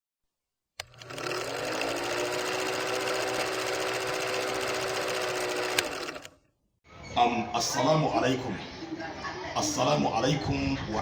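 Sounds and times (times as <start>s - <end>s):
small motor whirring: 0.8s - 6.4s.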